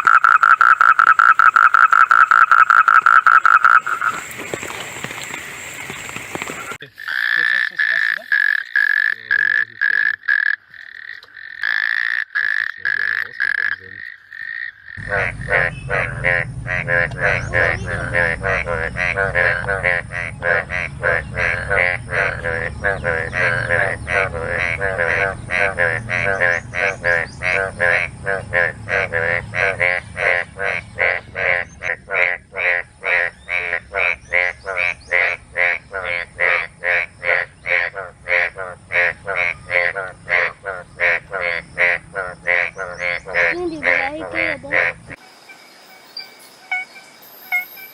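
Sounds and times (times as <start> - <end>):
rough warbling frog call: 0.0 - 47.9
low hum: 15.0 - 31.8.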